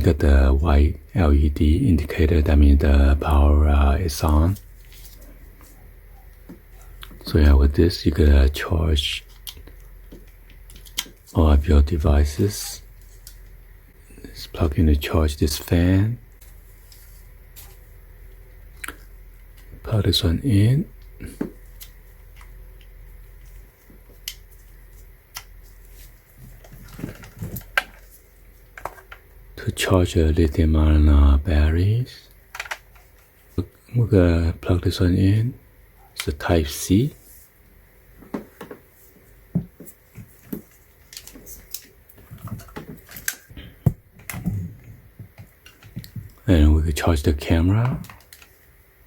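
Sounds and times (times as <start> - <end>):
handling rustle: 4.5 - 7.2, 21.3 - 29.2.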